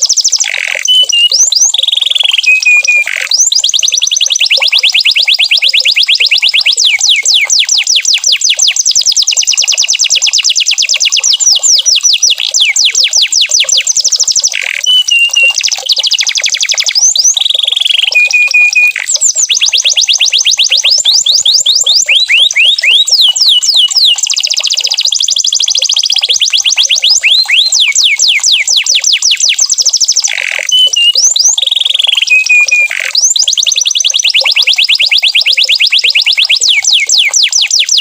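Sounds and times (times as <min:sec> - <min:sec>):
canary trilling: 0:00.0 - 0:38.0
canary whistles: 0:00.0 - 0:38.0.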